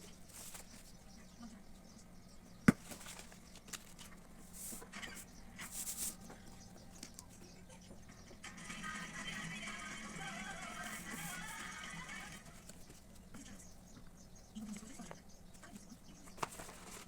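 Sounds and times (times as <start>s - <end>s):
soft handling rustles and scrapes: 0.0s - 1.0s, 2.8s - 7.3s, 10.8s - 13.6s, 15.6s - 17.0s.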